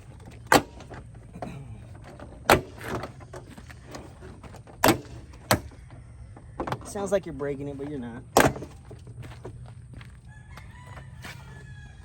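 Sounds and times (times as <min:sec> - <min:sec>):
trim panel clicking and rattling: 0:00.0 - 0:07.1.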